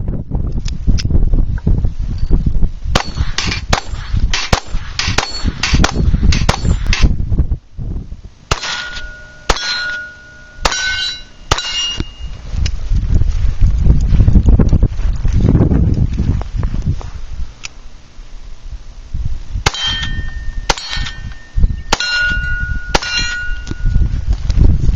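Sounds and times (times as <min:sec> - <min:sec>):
pistol shots: 0:03.0 - 0:07.1, 0:08.5 - 0:12.0, 0:21.9 - 0:23.5
metallic ringing: 0:05.2 - 0:07.1, 0:08.5 - 0:12.4, 0:19.6 - 0:24.2.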